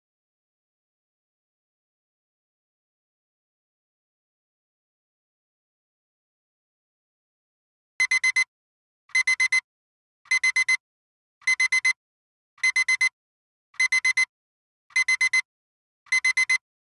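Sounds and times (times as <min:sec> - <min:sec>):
timer alarm beeping: 0:08.0 - 0:08.5, 0:09.1 - 0:09.6, 0:10.3 - 0:10.8, 0:11.4 - 0:12.0, 0:12.6 - 0:13.1, 0:13.8 - 0:14.3, 0:14.9 - 0:15.5, 0:16.1 - 0:16.6.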